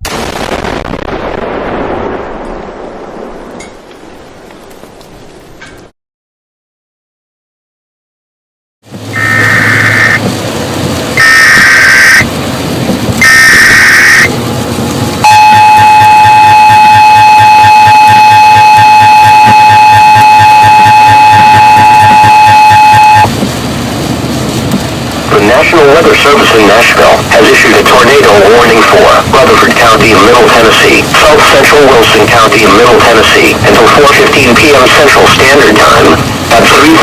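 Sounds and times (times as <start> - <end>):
digital data tone bursts: 9.2 - 10.2, 11.2 - 12.2
two-tone alert signal: 9.2 - 10.2, 13.2 - 14.3, 15.2 - 23.3.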